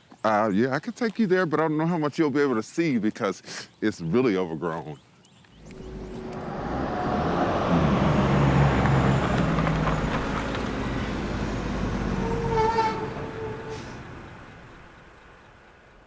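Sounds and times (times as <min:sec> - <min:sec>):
road vehicle passing: 0:05.6 - 0:15.5.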